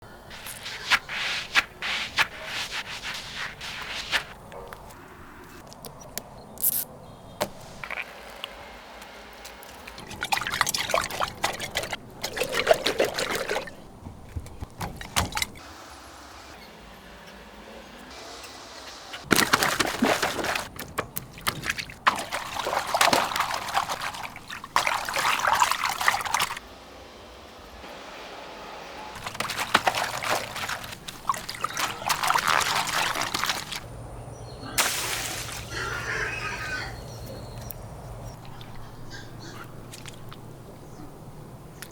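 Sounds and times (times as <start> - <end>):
water gushing and splashing: 0.3 - 4.4, 9.7 - 15.6, 19.2 - 26.6, 29.2 - 33.9, 34.8 - 36.4.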